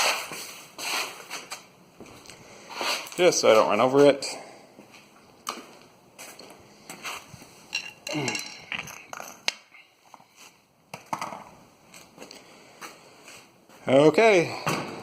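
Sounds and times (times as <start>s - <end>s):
hand tools clinking and knocking: 7.7s - 9.8s.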